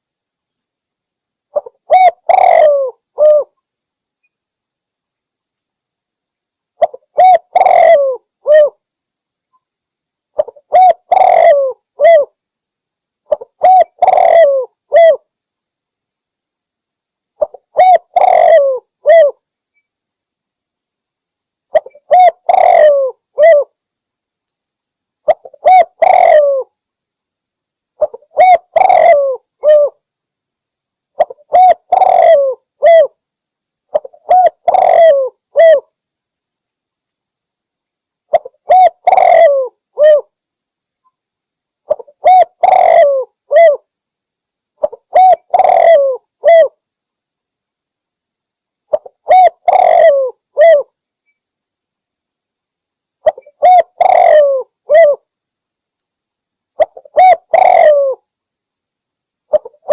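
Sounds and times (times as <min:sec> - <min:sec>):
dove cooing: 0:01.5 - 0:03.5, 0:06.8 - 0:08.8, 0:10.4 - 0:12.3, 0:13.3 - 0:15.2, 0:17.4 - 0:19.4, 0:21.7 - 0:23.7, 0:25.3 - 0:26.7, 0:28.0 - 0:30.0, 0:31.2 - 0:33.1, 0:33.9 - 0:35.9, 0:38.3 - 0:40.3, 0:41.9 - 0:43.8, 0:44.8 - 0:46.8, 0:48.9 - 0:50.9, 0:53.2 - 0:55.2, 0:56.8 - 0:58.2, 0:59.5 - 0:59.9.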